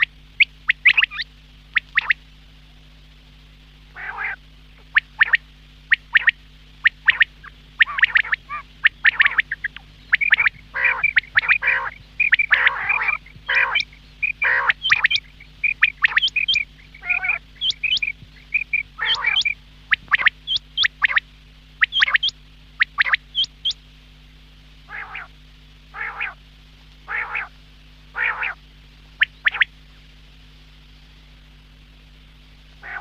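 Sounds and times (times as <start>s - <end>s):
quail calling: 0.0s - 2.2s, 3.9s - 21.2s, 21.8s - 23.8s, 24.9s - 26.4s, 27.0s - 28.6s, 29.2s - 29.7s, 32.8s - 33.0s.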